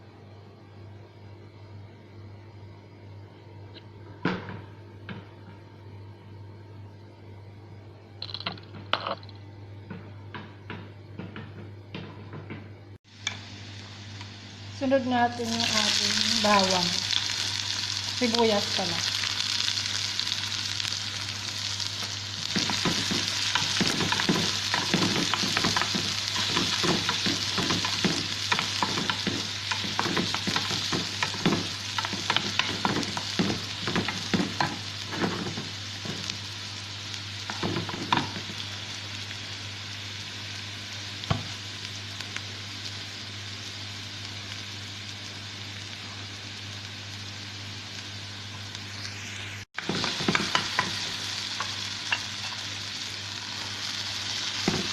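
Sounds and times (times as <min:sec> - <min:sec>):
garlic and onion sizzling: 0:13.0 - 0:54.9.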